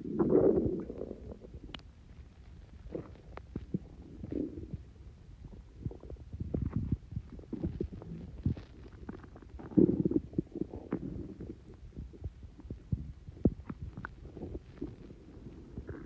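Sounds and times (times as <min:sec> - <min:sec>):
stomach gurgling and rumbling: 0:00.0 - 0:16.0.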